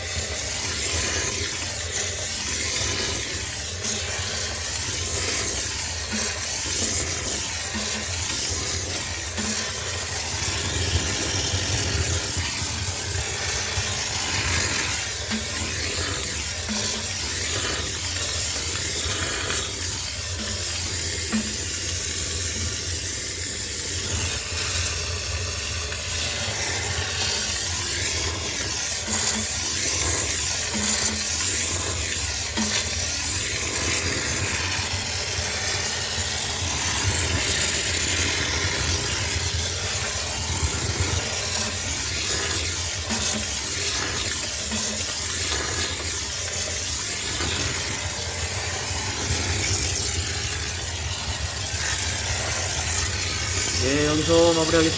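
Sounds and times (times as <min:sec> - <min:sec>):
steam cleaner hissing: 0:00.0 - 0:54.9.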